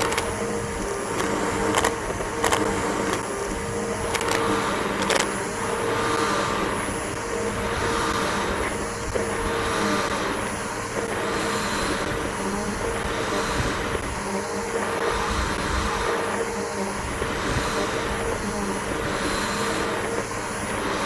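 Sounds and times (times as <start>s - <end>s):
vacuum cleaner motor whining: 0.0s - 5.3s
debris clicking in vacuum: 0.0s - 5.4s.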